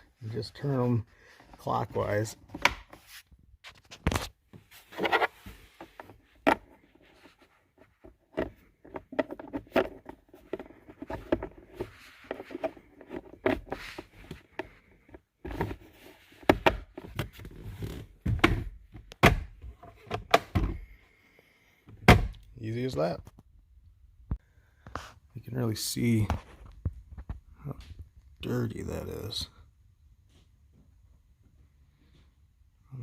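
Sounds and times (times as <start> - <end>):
plastic scraping and rubbing: 1.6 - 18.6
plastic parts clicking and knocking: 5.0 - 20.8.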